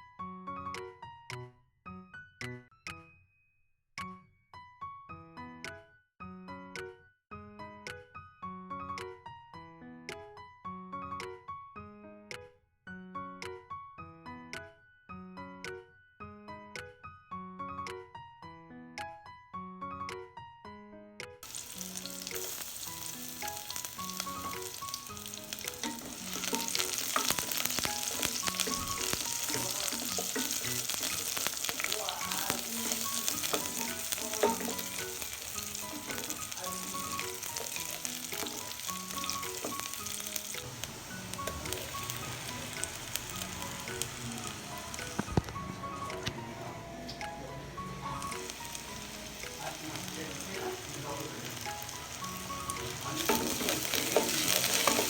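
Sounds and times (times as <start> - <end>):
background piano music: 0.0 - 3.4, 4.0 - 55.0
food sizzling in a pan: 21.4 - 55.0.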